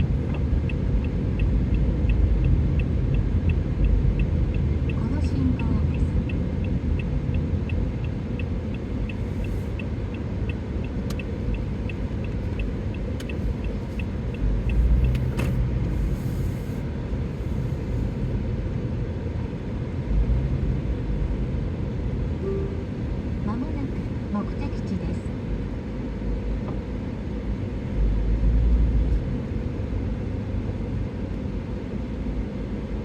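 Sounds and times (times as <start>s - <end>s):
turn signal ticking: 0.0s - 16.2s
car road and engine rumble: 0.0s - 33.0s.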